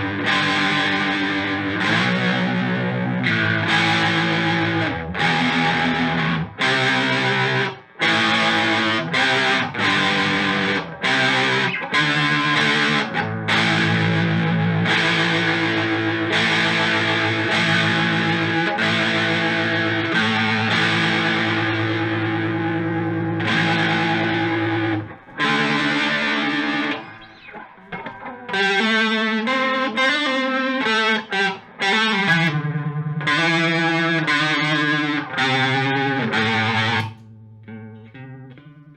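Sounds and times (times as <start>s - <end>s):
distorted electric guitar: 0.0s - 38.9s.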